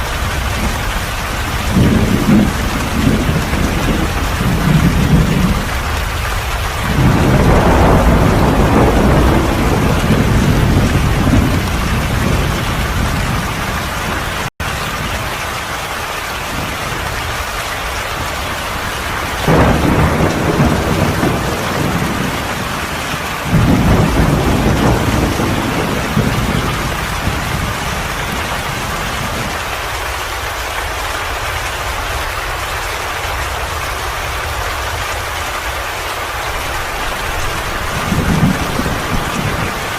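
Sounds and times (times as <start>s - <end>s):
heavy rain: 0.0s - 39.9s
low rolls of thunder: 0.1s - 14.3s, 18.1s - 29.9s, 36.4s - 39.9s.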